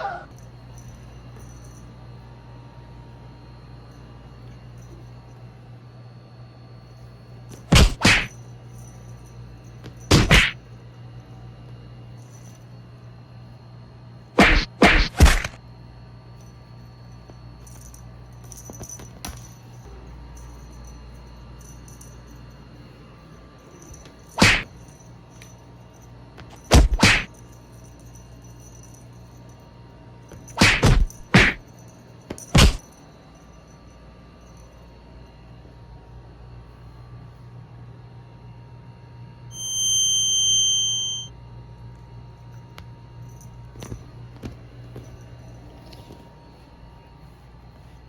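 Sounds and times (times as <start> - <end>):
faint hum: 0.0 - 48.0
cartoon whack sound effects: 7.7 - 8.3, 10.1 - 10.6, 14.4 - 15.6, 24.4 - 24.7, 26.7 - 27.3, 30.6 - 31.6.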